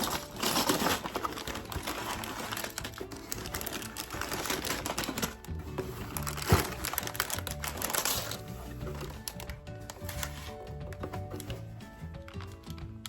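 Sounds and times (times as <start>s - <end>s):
background music: 0.0s - 13.0s.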